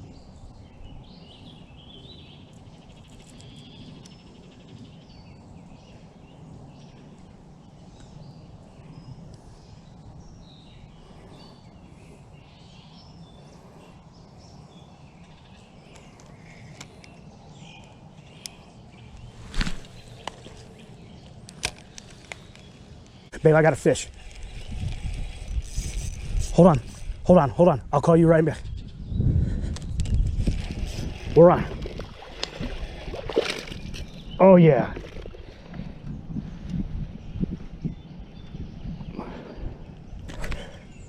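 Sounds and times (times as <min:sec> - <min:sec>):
songbirds chirping: 0:00.0 - 0:41.0.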